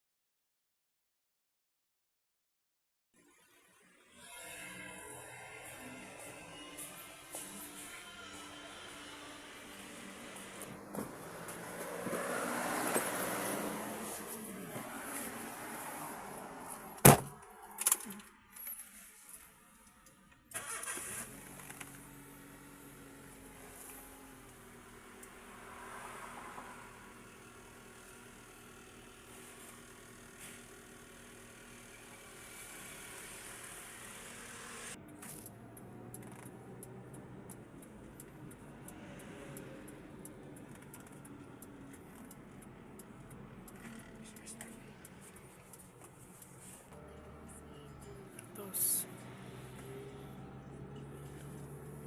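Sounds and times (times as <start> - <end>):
car engine starting and idling: 4.3 - 52.0
scooter humming: 4.7 - 17.0.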